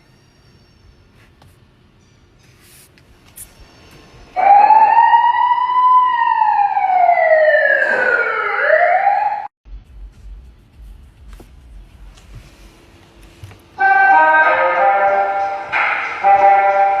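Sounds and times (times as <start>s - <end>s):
siren-like car horn wailing: 3.9s - 9.5s, 13.8s - 17.0s.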